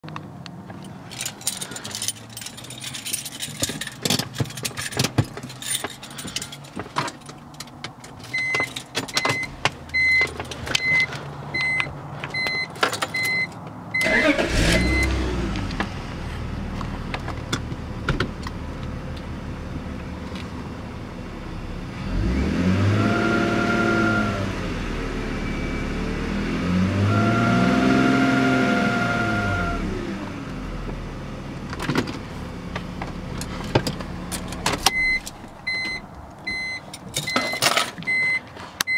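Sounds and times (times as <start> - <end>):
car engine starting and idling: 0.1 - 38.9
car warning chime beeping: 8.3 - 15.2, 34.9 - 38.9
engine revving: 14.0 - 16.1, 21.8 - 30.5.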